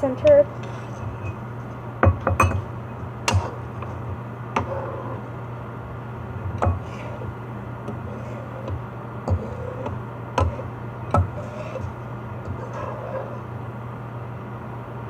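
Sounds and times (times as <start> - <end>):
steady low hum: 0.0 - 15.0
cookware clinking: 2.0 - 2.6.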